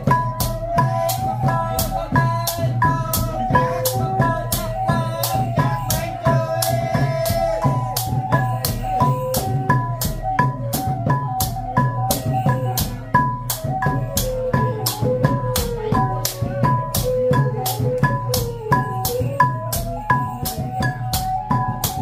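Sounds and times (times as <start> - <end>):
drums: 0.0 - 22.0
wavering melody line: 0.0 - 22.0.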